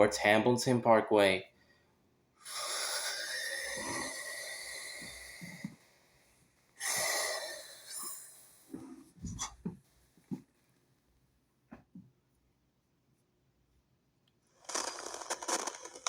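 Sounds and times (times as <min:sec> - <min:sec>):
compressed air hissing: 0:06.8 - 0:08.8.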